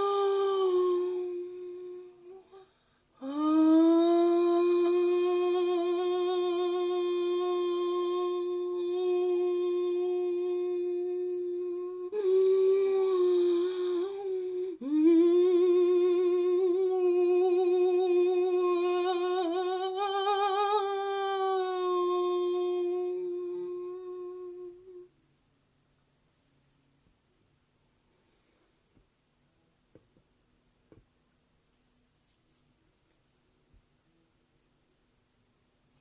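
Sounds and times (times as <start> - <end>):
person humming long notes: 0.0 - 25.1.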